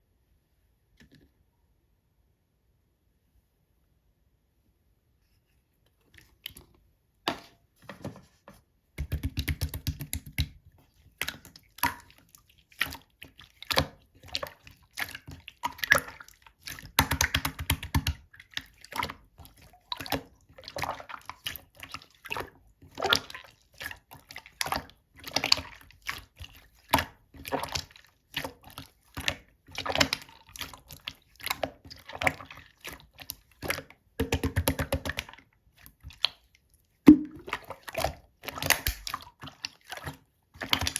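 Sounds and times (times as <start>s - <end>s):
slime clicks and squelches: 38.6s - 39.2s.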